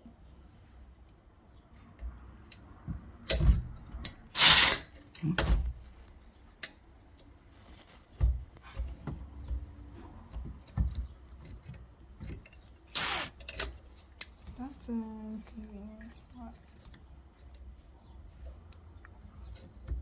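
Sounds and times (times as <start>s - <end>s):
door-lock hardware knocks and clicks: 10.3s - 12.6s.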